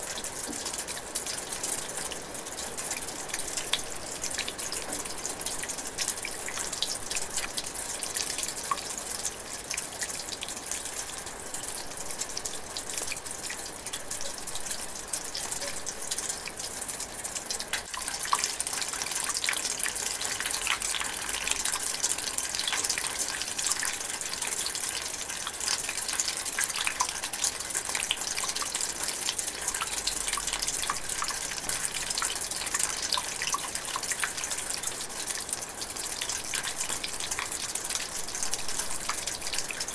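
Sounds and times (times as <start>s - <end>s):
light rain patter: 0.0s - 39.9s.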